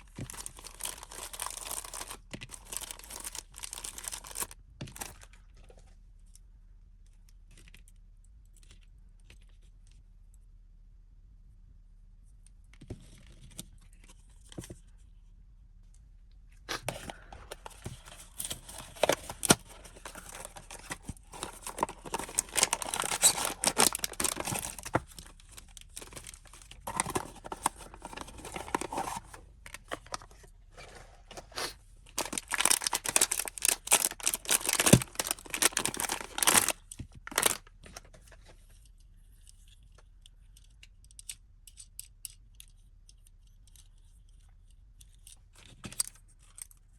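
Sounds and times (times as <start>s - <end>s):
packaging tearing and crinkling: 0.0s - 5.2s, 16.7s - 30.3s, 31.4s - 37.7s.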